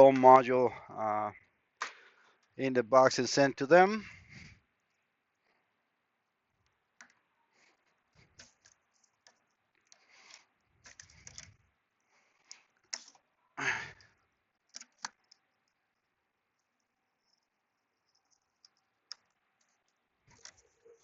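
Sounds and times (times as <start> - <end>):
hands handling parts: 6.5 - 21.0.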